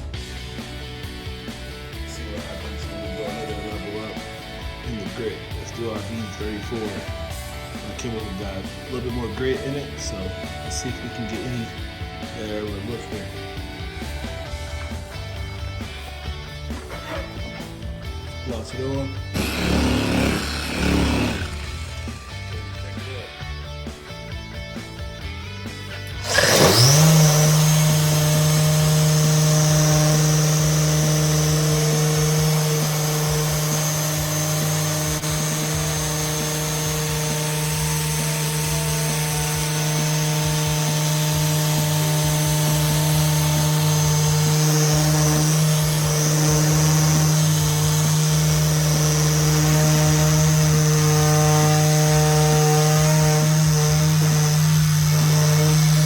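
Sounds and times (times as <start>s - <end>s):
polisher motor whine: 19.4s - 22.2s, 26.2s - 56.0s.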